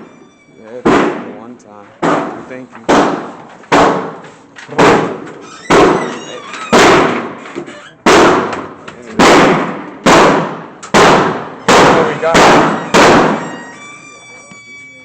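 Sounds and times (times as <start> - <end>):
gunshots with reverberating tail: 0.8 - 1.4, 2.0 - 6.0, 6.7 - 7.4, 8.0 - 13.5.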